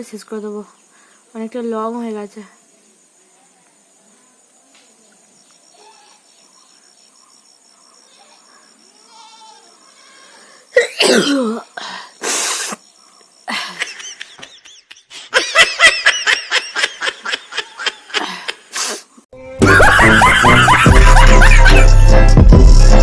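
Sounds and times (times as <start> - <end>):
woman sneezing: 10.8 - 11.7.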